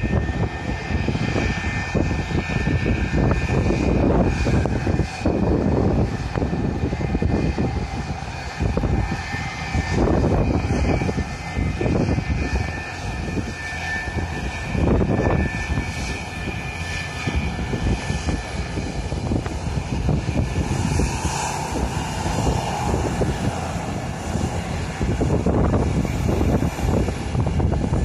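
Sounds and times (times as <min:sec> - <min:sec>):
jet engines whining: 0:00.0 - 0:28.0
wind buffeting microphone: 0:00.0 - 0:28.0.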